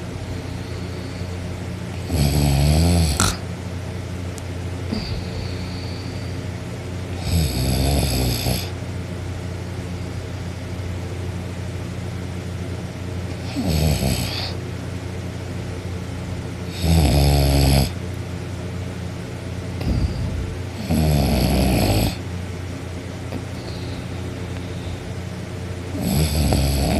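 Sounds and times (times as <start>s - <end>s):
person snoring: 2.0s - 3.4s, 7.2s - 8.8s, 13.4s - 14.6s, 16.7s - 18.0s, 19.8s - 22.2s, 26.0s - 26.9s.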